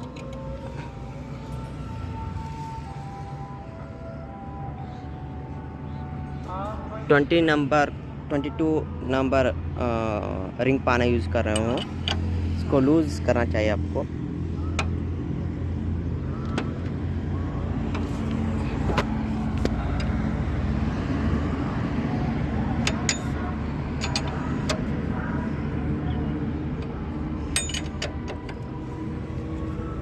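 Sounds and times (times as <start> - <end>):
spanner clinking on metal: 11.4 - 12.3, 22.8 - 24.9, 27.5 - 28.6.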